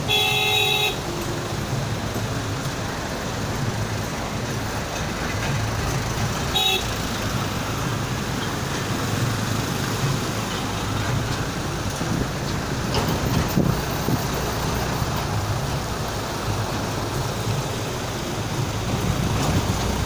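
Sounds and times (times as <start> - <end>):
vehicle horn toot: 0.0 - 1.1, 6.5 - 6.9
road traffic noise: 0.0 - 20.0.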